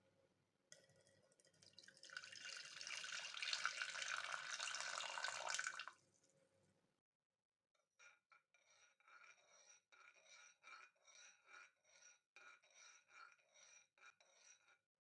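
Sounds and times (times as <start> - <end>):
spoon stirring in a glass: 8.7 - 14.8.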